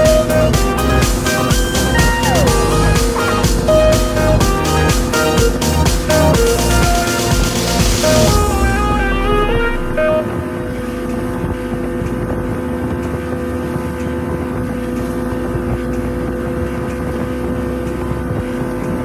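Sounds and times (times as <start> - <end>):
motorboat engine droning: 0.0 - 19.0.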